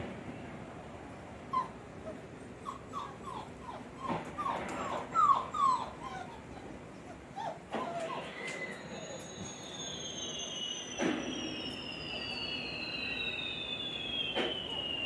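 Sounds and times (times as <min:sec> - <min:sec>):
puppies whimpering: 0:01.5 - 0:09.2.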